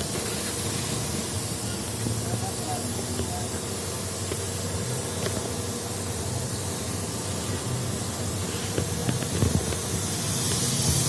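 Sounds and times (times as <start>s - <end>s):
constant hiss: 0.0s - 11.0s.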